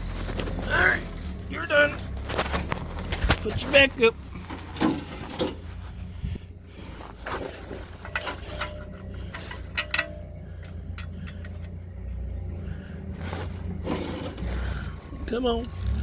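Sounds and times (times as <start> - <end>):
low steady hum: 0.0 - 16.0
metal tools clinking: 6.8 - 16.0.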